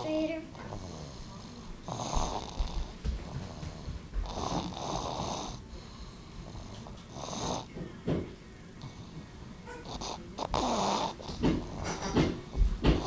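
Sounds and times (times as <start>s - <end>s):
baby snoring: 0.0s - 7.8s, 9.8s - 12.1s.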